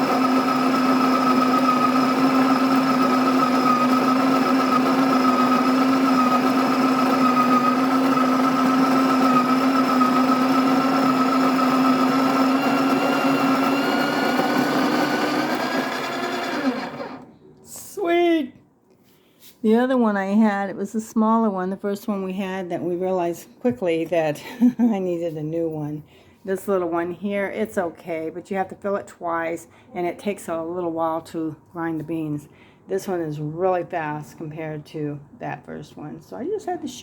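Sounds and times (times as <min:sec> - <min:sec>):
electric coffee grinder: 0:00.0 - 0:17.3.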